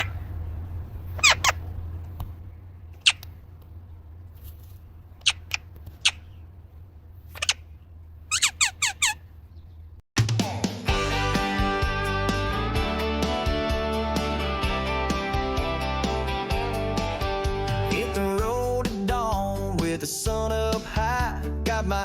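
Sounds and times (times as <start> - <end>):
low steady hum: 0.0 - 8.4
toy squeaks falling in pitch: 8.3 - 9.2.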